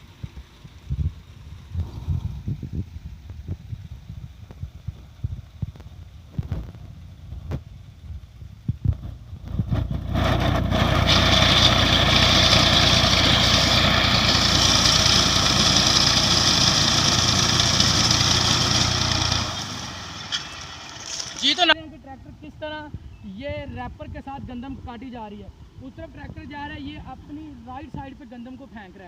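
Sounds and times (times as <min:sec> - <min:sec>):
tractor diesel engine: 0:00.0 - 0:21.8.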